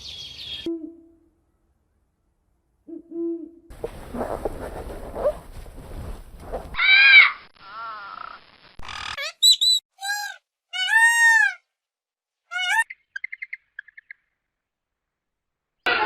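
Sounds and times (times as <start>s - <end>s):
bird calls and chirps: 0.0s - 0.7s, 8.9s - 10.4s, 12.5s - 14.4s.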